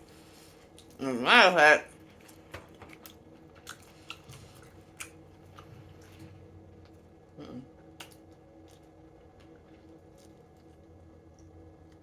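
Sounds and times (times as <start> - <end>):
person chewing food: 2.1 - 11.5.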